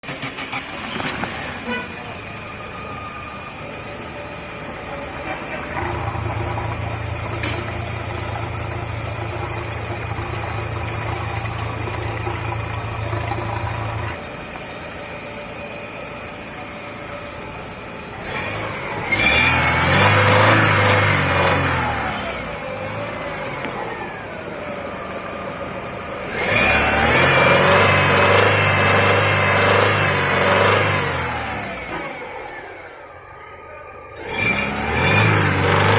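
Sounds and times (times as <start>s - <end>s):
car engine humming and revving: 0.0s - 35.9s.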